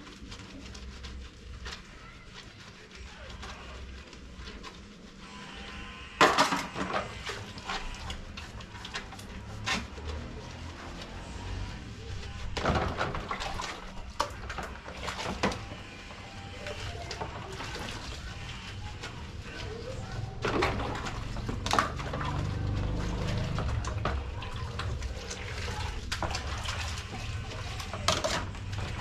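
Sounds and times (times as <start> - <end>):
water sloshing: 6.8 - 29.0
pots and plates clattering: 27.9 - 28.9.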